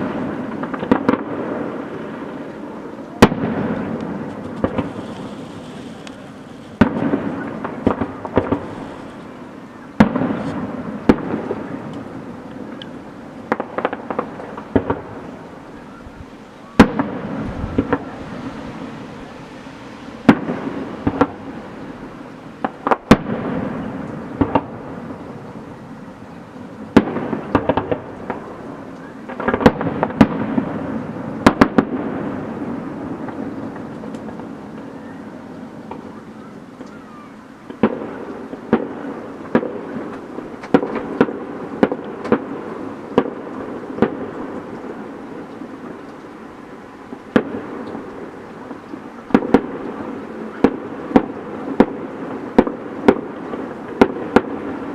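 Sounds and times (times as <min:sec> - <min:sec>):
fireworks rumble and crackle: 0:00.0 - 0:54.9
firework shells bursting: 0:03.2 - 0:09.4, 0:10.0 - 0:15.8, 0:19.8 - 0:21.6.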